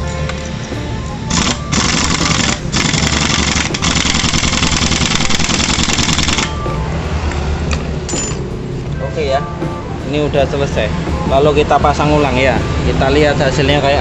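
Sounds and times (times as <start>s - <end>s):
impact wrench hammering: 1.3s - 6.6s.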